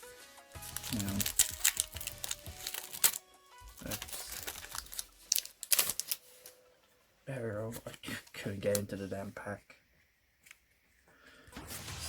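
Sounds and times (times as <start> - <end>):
background music: 0.0 - 6.9
foil wrapper crinkling: 0.5 - 6.6.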